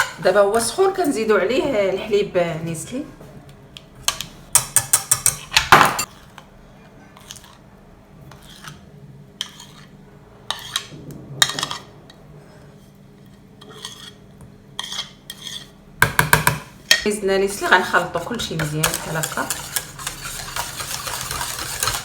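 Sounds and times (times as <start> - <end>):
utensil clinking on metal saucepan: 16.9 - 22.0.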